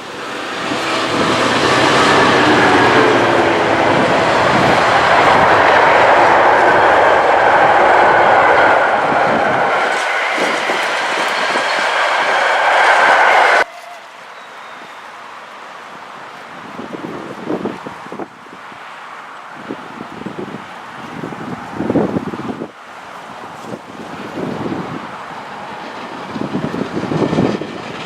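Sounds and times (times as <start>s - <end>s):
train passing at speed: 0.0s - 28.0s.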